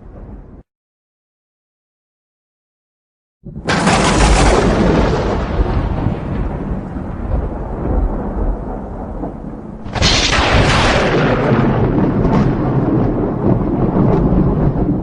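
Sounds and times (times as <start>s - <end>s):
thunder rumbling and cracking: 3.4s - 15.0s.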